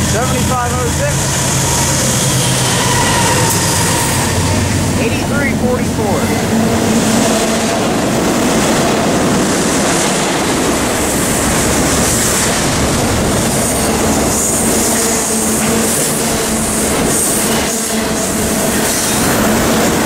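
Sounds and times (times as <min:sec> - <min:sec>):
train wheels clattering on rails: 0:00.0 - 0:20.0
faint wheel squeal: 0:01.4 - 0:04.8.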